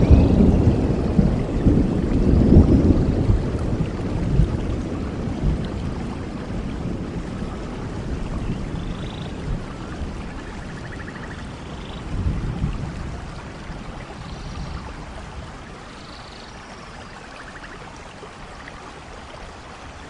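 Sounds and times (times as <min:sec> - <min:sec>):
rain falling on leaves: 0:00.0 - 0:20.0.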